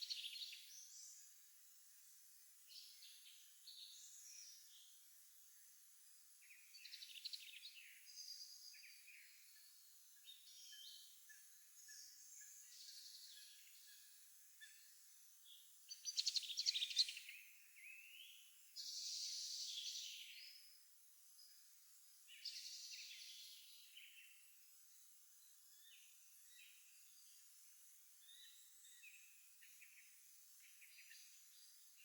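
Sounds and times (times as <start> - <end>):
songbirds singing: 0.0 - 20.8, 21.4 - 32.0
soft bird chirps: 22.2 - 32.0.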